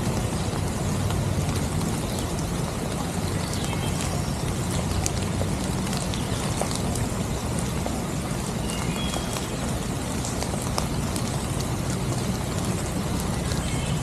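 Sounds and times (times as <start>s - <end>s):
drops ticking nearby: 0.0s - 14.0s
steady rain hiss: 0.0s - 14.0s.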